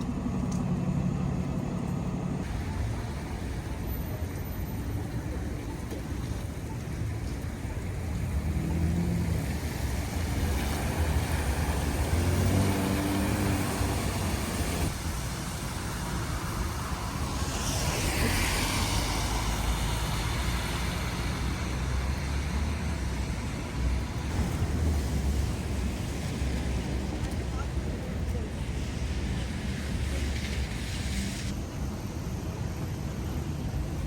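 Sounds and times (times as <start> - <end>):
low engine rumble of traffic: 0.0 - 34.0
tyres hissing on wet road: 2.4 - 34.0.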